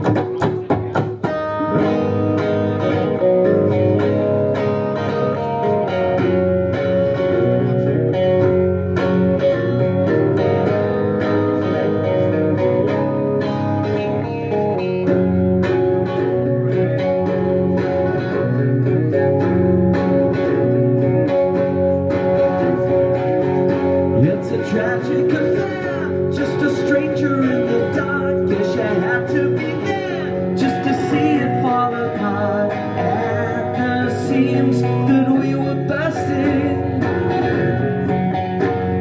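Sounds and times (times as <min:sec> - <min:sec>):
strummed guitar chords: 0:00.0 - 0:39.0.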